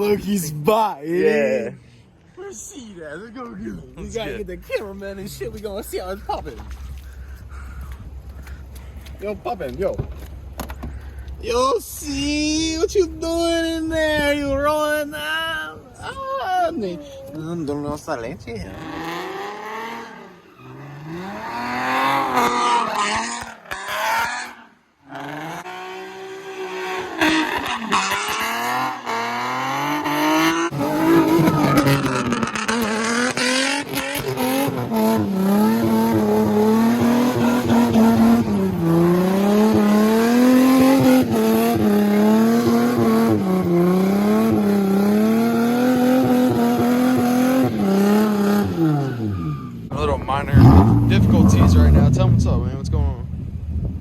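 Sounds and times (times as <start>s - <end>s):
car engine revving: 18.5s - 54.0s.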